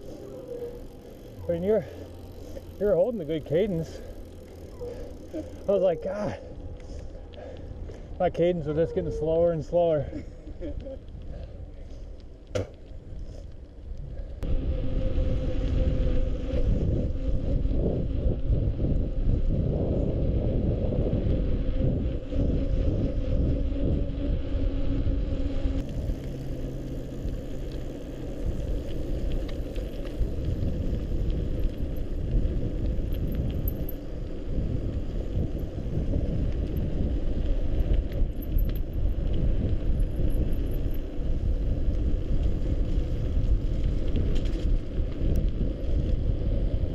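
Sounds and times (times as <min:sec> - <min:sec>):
bike tyres churning through slush: 0:00.0 - 0:12.2, 0:14.6 - 0:46.9
wind on microphone: 0:13.0 - 0:46.9.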